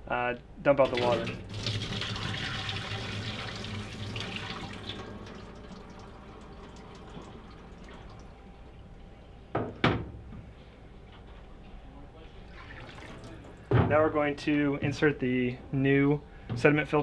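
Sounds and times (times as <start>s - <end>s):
water splashing and dripping: 0.8s - 8.7s, 12.6s - 13.6s.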